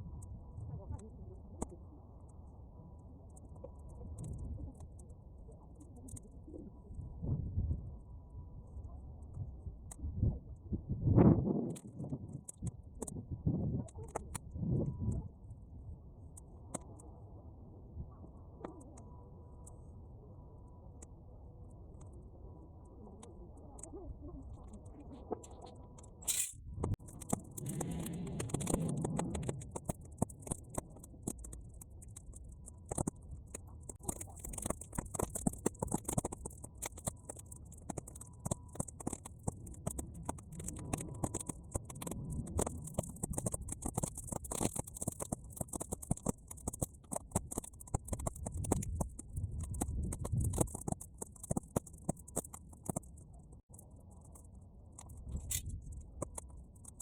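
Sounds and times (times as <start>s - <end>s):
low rumble: 21.8s - 35.8s
weeds crackling and popping in bonfire: 24.7s - 57.0s.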